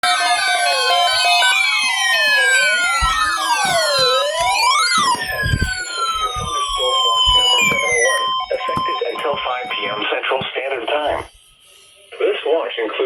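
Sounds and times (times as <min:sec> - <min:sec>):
swooping siren-like alert tones: 0:00.0 - 0:10.1.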